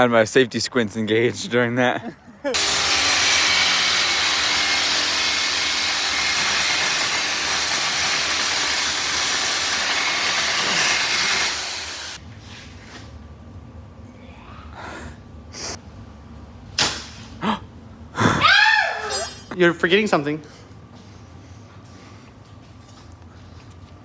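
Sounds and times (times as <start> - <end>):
welding arc crackling and hissing: 2.6 - 12.2.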